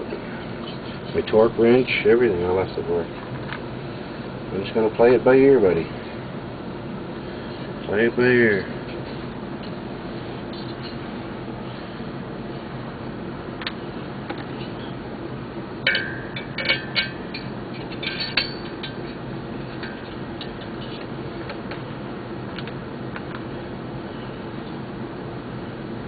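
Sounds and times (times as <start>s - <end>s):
metal tools clinking and tapping: 15.8s - 21.8s.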